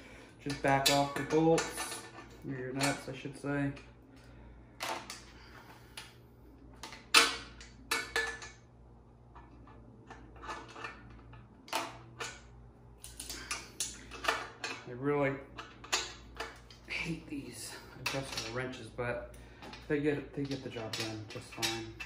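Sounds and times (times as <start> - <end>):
metal tools clinking: 15.6 - 18.8, 19.7 - 22.0.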